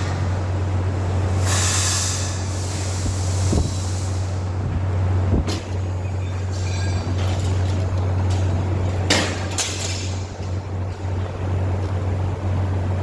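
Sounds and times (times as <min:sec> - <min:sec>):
short burst of hiss: 0:01.3 - 0:04.4.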